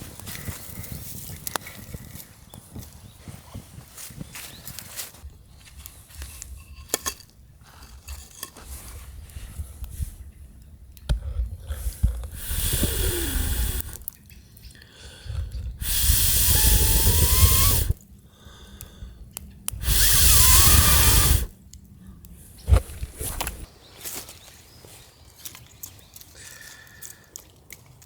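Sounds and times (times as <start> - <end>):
fire crackling: 8.4 - 23.7
person blowing on campfire: 11.2 - 14.1, 15.0 - 21.5, 22.7 - 23.7.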